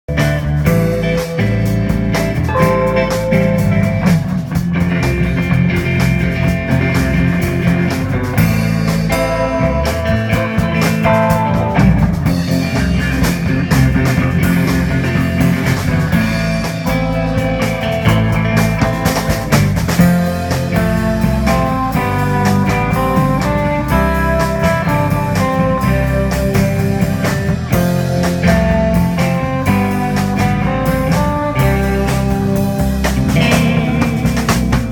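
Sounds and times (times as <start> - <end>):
bass: 0.0 - 34.9
guitar: 0.0 - 34.9
drum kit beat: 0.1 - 34.9.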